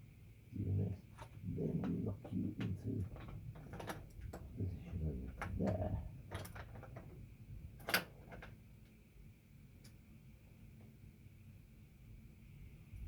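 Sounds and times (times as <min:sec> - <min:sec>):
low murmuring: 0:00.5 - 0:06.9.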